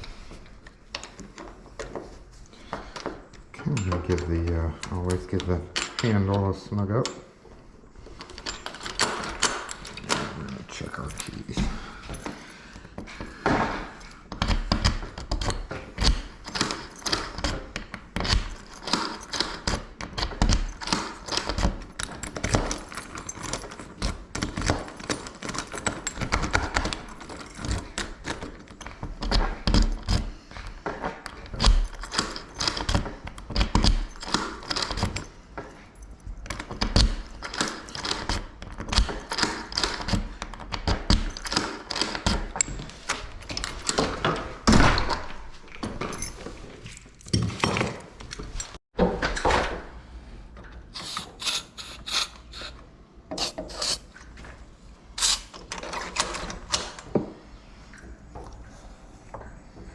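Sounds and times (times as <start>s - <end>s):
keys clicking in a door lock: 8.2s - 12.3s, 14.3s - 30.3s, 31.3s - 44.2s.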